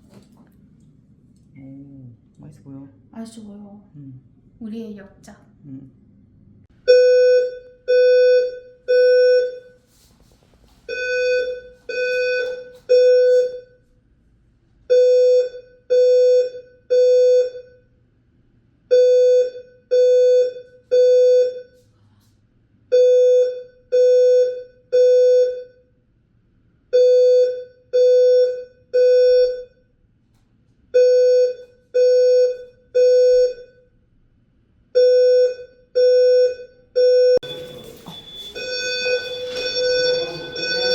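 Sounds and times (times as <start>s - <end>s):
fire alarm buzzy beeps: 6.8s - 9.8s, 10.9s - 13.9s, 14.9s - 18.0s, 18.9s - 21.8s, 22.9s - 26.0s, 26.9s - 30.0s, 30.9s - 34.0s, 34.9s - 40.9s.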